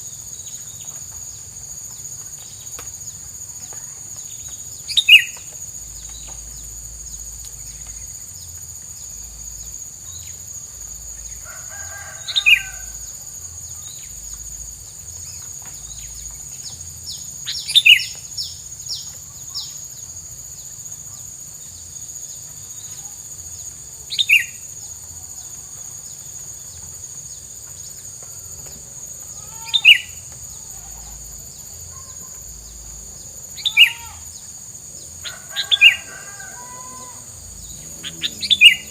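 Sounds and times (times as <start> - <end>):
steady high insect whine: 0.0 - 38.9
songbird calling: 3.6 - 10.4, 15.2 - 19.9, 24.1 - 24.7, 29.2 - 38.9.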